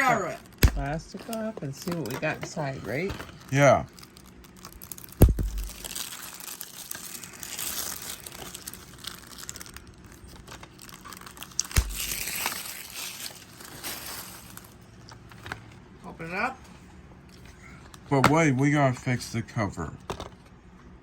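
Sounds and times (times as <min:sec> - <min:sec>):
plastic wrap crinkling: 0:00.0 - 0:15.4
sharp knocks: 0:05.2 - 0:05.9.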